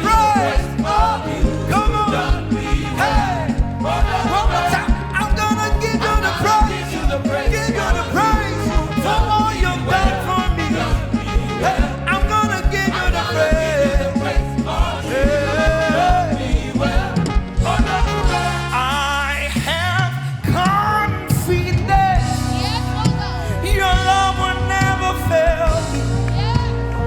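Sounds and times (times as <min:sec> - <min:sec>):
praise band playing upbeat song: 0:00.0 - 0:27.0.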